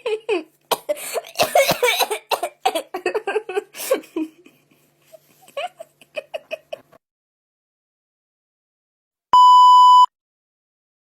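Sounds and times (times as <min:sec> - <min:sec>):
person giggling: 0:00.0 - 0:00.6, 0:02.8 - 0:07.0.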